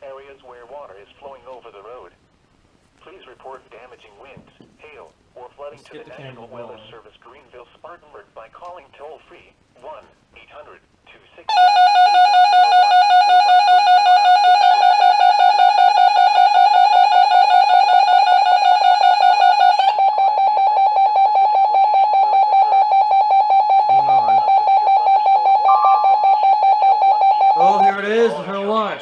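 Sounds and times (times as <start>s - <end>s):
buzzy electronic alarm beeping: 11.5s - 28.7s.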